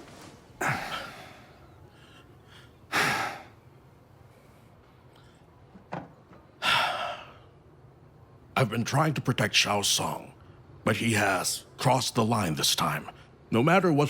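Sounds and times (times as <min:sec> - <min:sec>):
man sighing heavily: 0:00.6 - 0:01.5.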